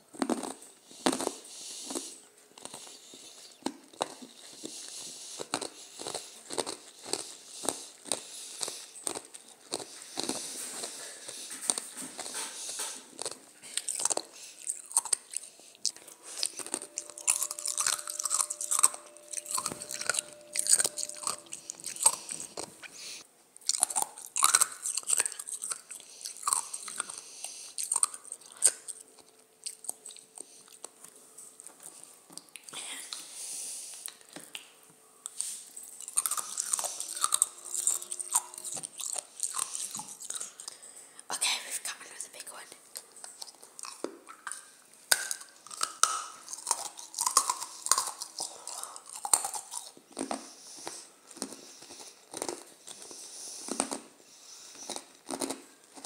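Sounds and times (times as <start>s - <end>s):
ice crunched between teeth: 0.1s - 2.9s, 5.4s - 11.0s, 13.2s - 22.9s, 23.6s - 27.2s, 43.8s - 50.5s, 51.3s - 53.1s, 54.8s - 56.0s.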